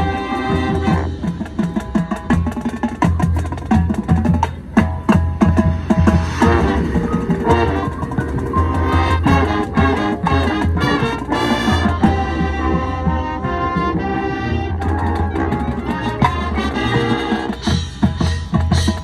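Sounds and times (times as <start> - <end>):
brass chords: 0.0 - 1.8, 5.4 - 18.1
marching drums and percussion: 0.0 - 19.0.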